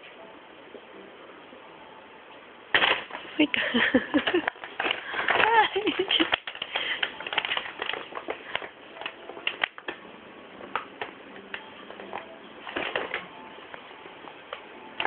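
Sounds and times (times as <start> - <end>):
paper bag crinkling: 2.7 - 9.9, 11.9 - 13.4.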